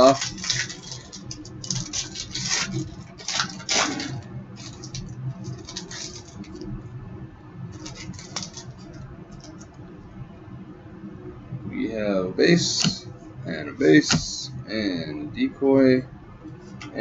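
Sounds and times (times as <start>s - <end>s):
cards rustling and sliding: 0.0s - 6.7s, 7.8s - 9.7s
wrapper crinkling: 0.0s - 6.7s, 7.7s - 9.6s.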